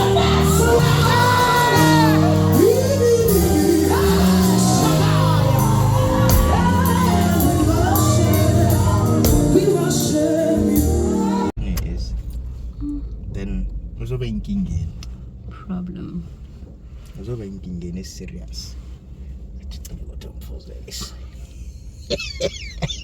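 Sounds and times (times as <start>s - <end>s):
song with singing and beat: 0.0s - 11.5s.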